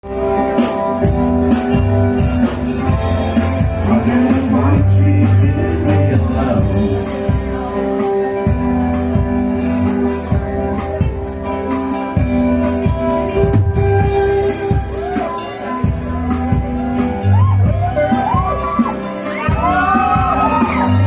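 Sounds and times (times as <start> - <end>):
drums: 0.0 - 21.0
electric guitar: 0.0 - 21.0
live rock band playing: 0.0 - 21.0.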